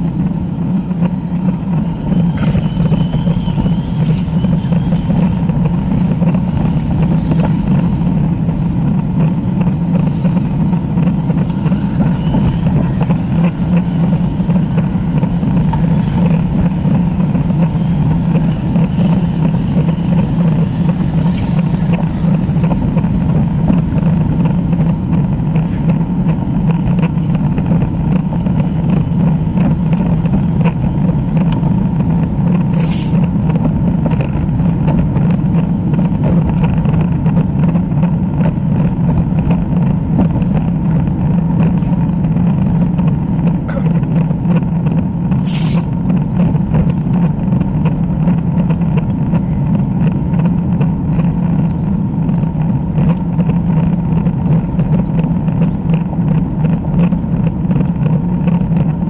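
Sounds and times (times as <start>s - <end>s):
wind and road noise: 0.0s - 59.0s
short hissing bursts: 21.2s - 21.6s, 32.7s - 33.2s, 45.4s - 46.0s.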